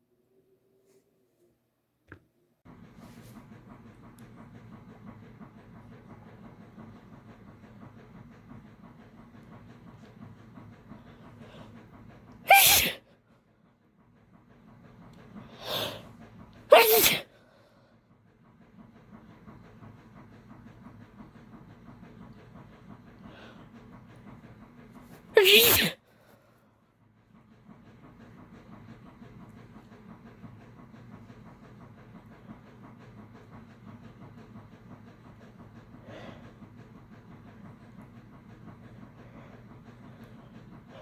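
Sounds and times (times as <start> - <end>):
woman sneezing: 12.5 - 13.0, 16.7 - 17.3, 25.4 - 26.0.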